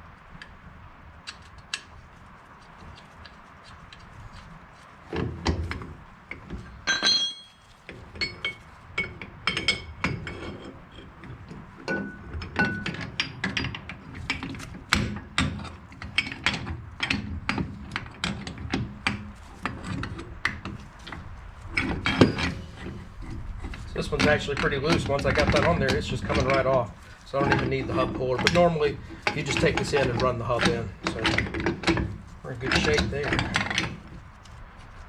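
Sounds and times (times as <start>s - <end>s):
short metallic ring: 6.8s - 8.6s
metal clicks and clinks: 6.8s - 10.6s.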